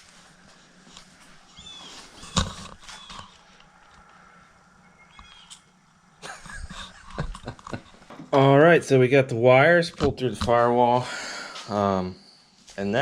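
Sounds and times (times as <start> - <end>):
rustling: 0.0 - 4.6
faint high chirps: 4.1 - 6.0.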